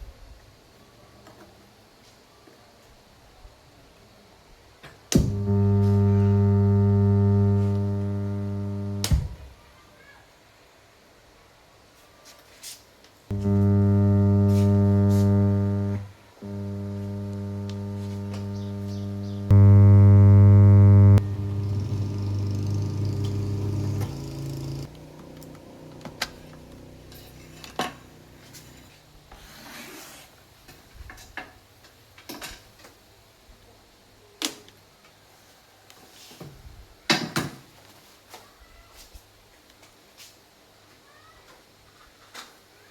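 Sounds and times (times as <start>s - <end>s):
amplifier buzzing hum: 5.2s - 9.4s, 13.3s - 24.9s.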